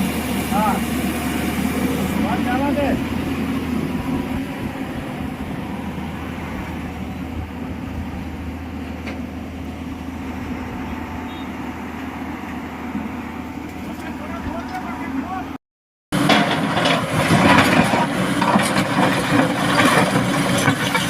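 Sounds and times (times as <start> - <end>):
diesel machinery engine drone: 0.0 - 15.6, 16.2 - 21.0.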